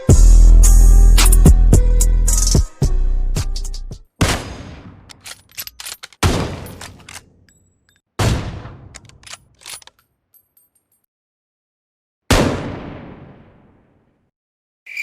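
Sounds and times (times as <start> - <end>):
gunshots with echoing tail: 4.2 - 5.1
small metallic clicks: 5.1 - 8.0, 9.0 - 11.1.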